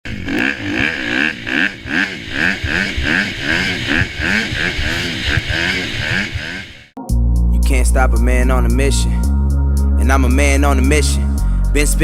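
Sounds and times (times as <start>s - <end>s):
dirt bike engine revving: 0.0s - 7.0s.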